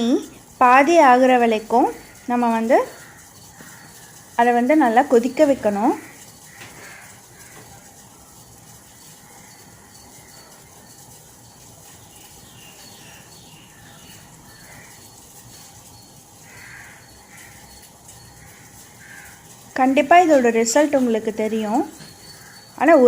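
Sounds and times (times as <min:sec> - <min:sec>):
steady low hiss: 0:00.0 - 0:23.0
bird chirps: 0:06.2 - 0:23.0.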